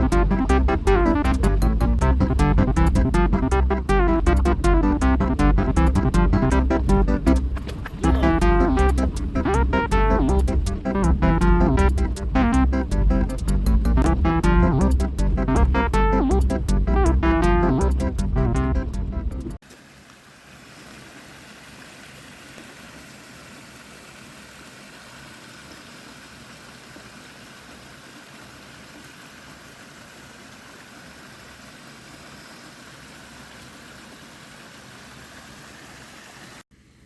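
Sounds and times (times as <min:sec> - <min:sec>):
vehicle engine: 0:00.0 - 0:19.6
tyres on dirt road: 0:00.0 - 0:37.0.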